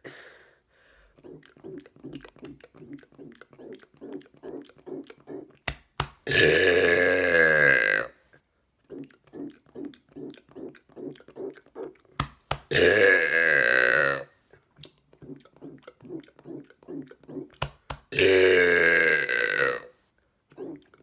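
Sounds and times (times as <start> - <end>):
man burping loudly: 6.2 - 8.2, 12.7 - 14.3, 18.1 - 20.0.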